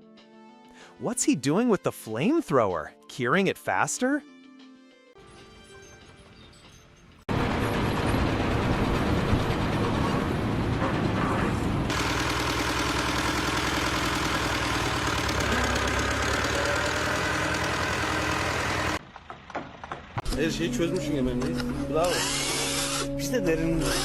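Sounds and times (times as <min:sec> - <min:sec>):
machine humming: 0:07.3 - 0:19.0.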